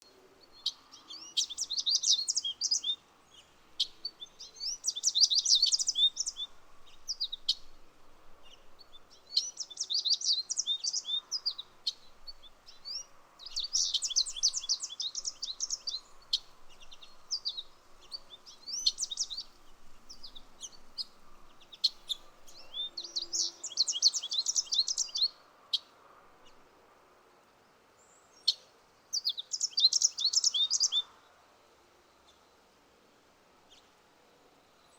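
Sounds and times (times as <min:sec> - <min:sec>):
birds twittering song: 0:00.0 - 0:26.7, 0:27.6 - 0:31.4
faint steady hum: 0:00.0 - 0:34.9
bird chirps: 0:00.4 - 0:07.8, 0:08.4 - 0:26.6, 0:28.0 - 0:31.2.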